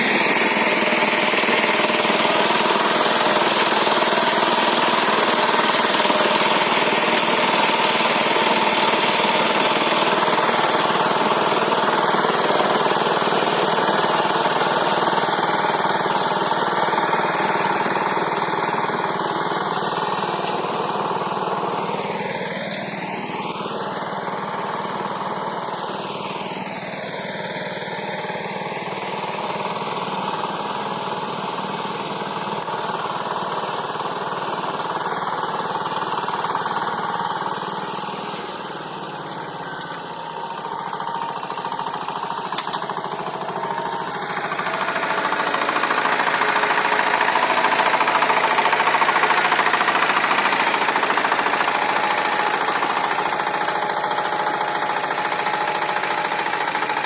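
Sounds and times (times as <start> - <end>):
tractor engine under load: 0.0 - 57.0.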